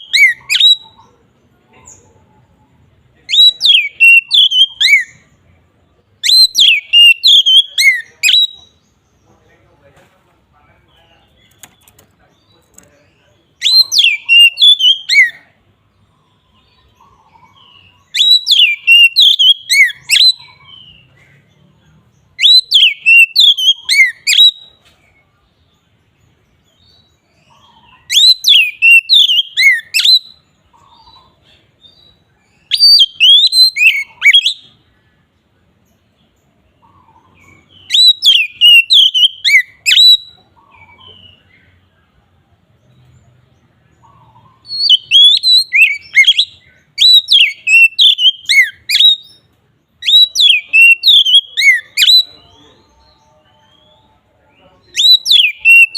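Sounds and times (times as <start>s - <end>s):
bird whistling song: 0.0s - 1.1s, 3.3s - 5.4s, 6.2s - 9.0s, 13.5s - 15.5s, 16.5s - 21.5s, 22.3s - 24.8s, 26.6s - 34.9s, 36.8s - 41.8s, 44.0s - 55.9s
faint bird chirps: 0.0s - 55.9s.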